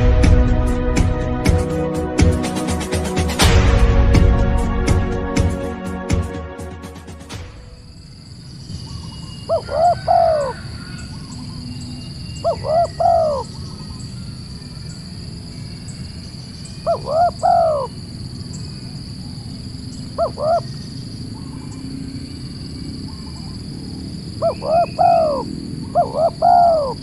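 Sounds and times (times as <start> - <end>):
bird calling: 8.7 - 15.1, 16.4 - 22.3, 23.0 - 27.0.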